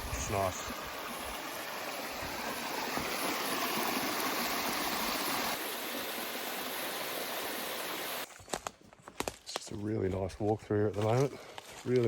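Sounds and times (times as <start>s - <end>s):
creek running over rocks: 0.0s - 8.3s.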